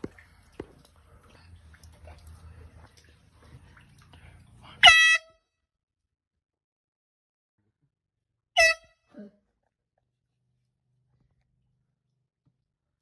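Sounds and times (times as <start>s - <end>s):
air horn blasts: 4.8s - 5.4s, 8.6s - 9.0s.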